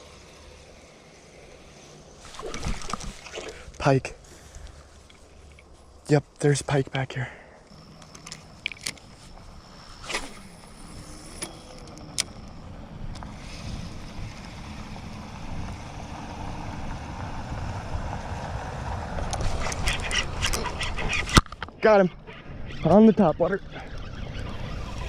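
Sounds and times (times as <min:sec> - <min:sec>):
wind rumbling on microphone: 0:02.2 - 0:06.0, 0:07.8 - 0:25.0.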